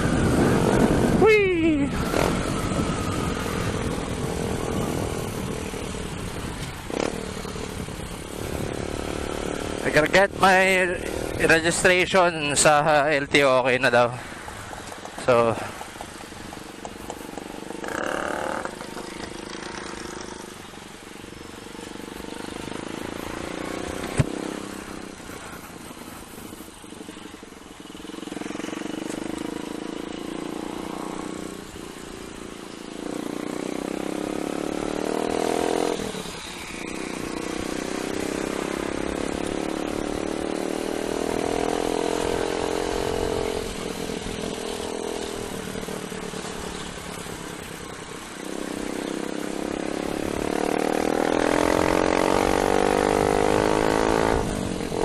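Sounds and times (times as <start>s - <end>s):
wind rushing: 0.0s - 11.7s
motorcycle engine accelerating: 0.0s - 11.8s, 14.7s - 55.0s.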